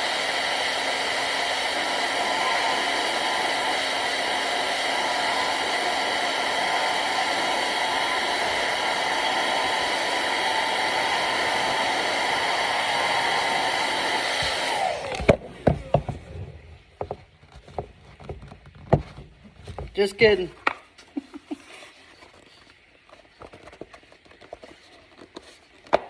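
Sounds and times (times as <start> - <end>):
hair dryer blowing: 0.0 - 16.6.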